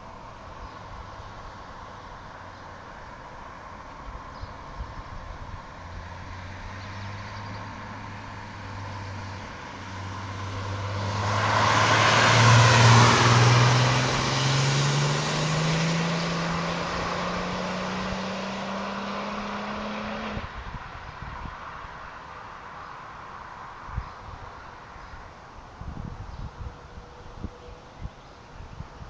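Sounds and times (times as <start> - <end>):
car engine accelerating past: 5.8 - 20.8.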